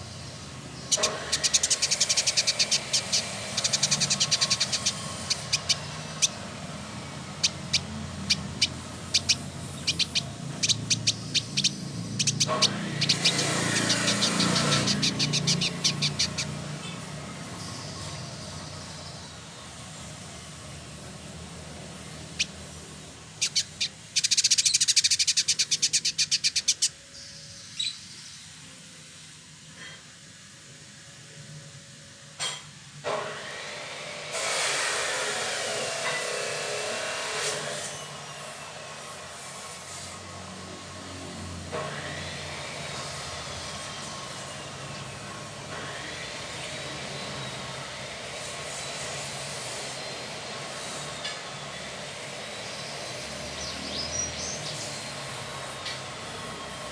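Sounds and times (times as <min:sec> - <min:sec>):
bird chattering and trilling: 0:00.0 - 0:28.1.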